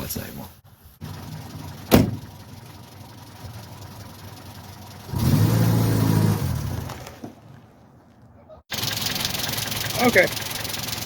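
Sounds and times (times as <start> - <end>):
car engine running: 1.0 - 6.9, 8.7 - 11.0.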